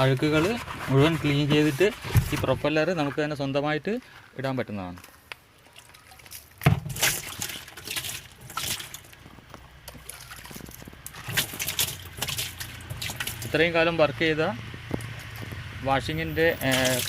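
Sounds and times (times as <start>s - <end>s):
knocks and rubbing: 0.0s - 3.3s
water trickling and sloshing: 5.4s - 13.8s, 16.5s - 17.0s.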